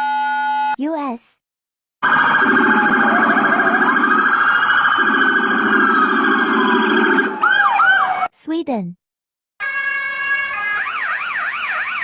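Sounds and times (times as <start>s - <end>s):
steady harsh tone: 2.0s - 7.4s
police siren wailing: 2.0s - 8.3s, 9.6s - 12.0s.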